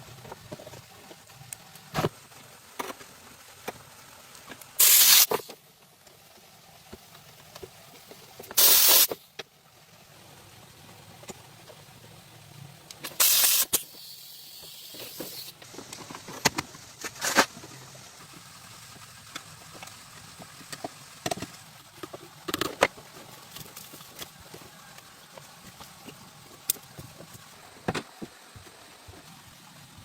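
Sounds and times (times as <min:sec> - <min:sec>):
loud hissing spray burst: 0:04.8 - 0:05.6, 0:08.5 - 0:09.2, 0:13.1 - 0:15.6.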